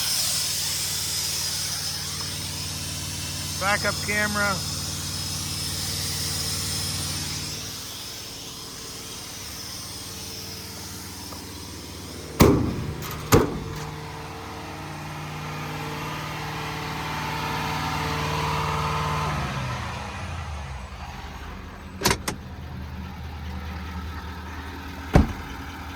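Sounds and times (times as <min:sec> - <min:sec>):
diesel engine idling: 0:00.0 - 0:25.9
sharp clunks: 0:12.4 - 0:14.1, 0:22.0 - 0:22.4, 0:25.1 - 0:25.7.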